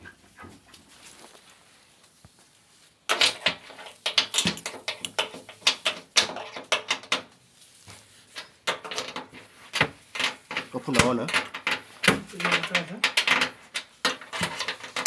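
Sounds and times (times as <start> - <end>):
washing machine parts clicking: 3.1 - 7.3, 8.3 - 15.0.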